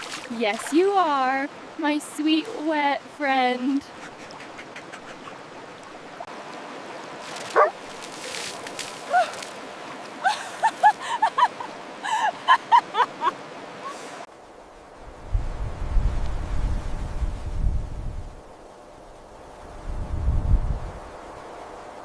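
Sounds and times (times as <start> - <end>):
background hiss: 0.0 - 22.0
dog yelping: 7.5 - 7.8.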